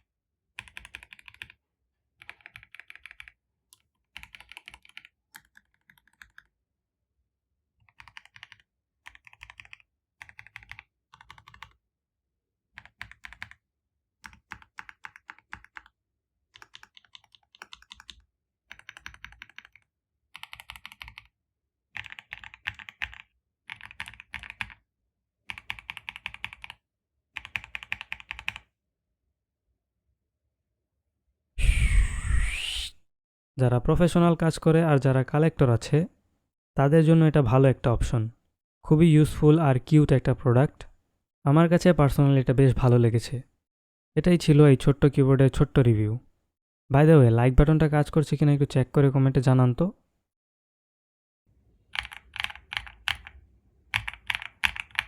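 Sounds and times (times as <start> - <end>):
keyboard typing: 0.6 - 1.6, 2.2 - 6.5, 7.8 - 11.8, 12.8 - 13.6, 14.2 - 15.9, 16.6 - 21.3, 22.0 - 24.8, 25.5 - 26.8, 27.4 - 28.6, 51.9 - 55.0.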